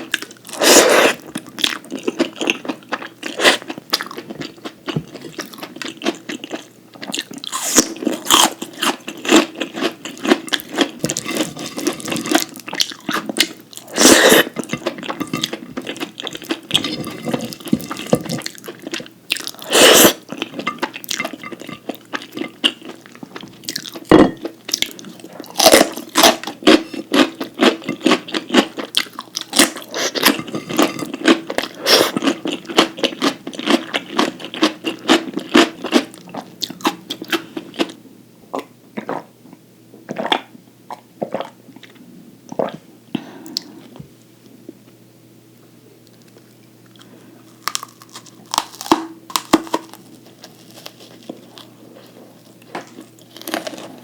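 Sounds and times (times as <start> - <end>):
chewing and crunching: 0.0 - 38.0, 46.1 - 54.0.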